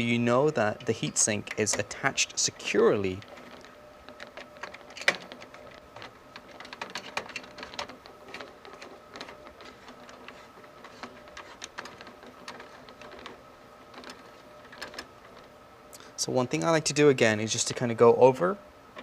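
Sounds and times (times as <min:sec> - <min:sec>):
faint steady hum: 0:00.0 - 0:19.0.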